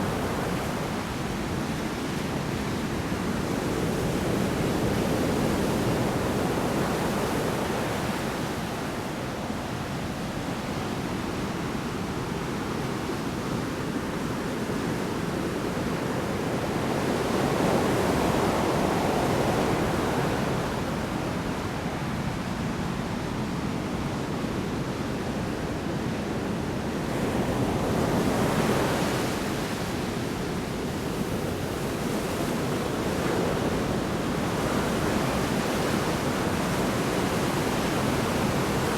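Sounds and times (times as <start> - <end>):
storm waves crashing on shore: 27.2 - 38.9.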